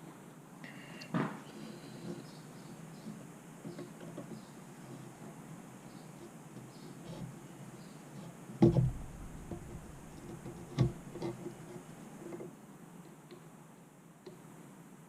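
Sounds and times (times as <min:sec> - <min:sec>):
metal parts knocking: 0:08.6 - 0:11.3.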